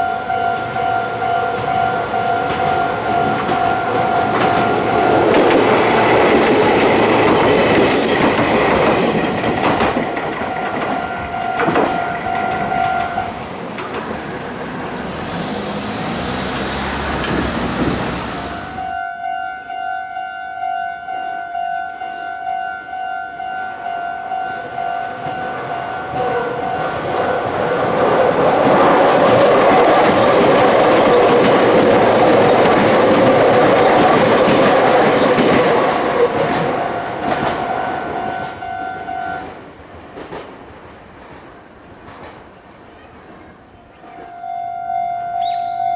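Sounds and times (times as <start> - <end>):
electric train rumbling past: 0.0 - 19.4, 21.1 - 45.9
two-tone level crossing bell: 18.8 - 26.3, 44.3 - 45.9.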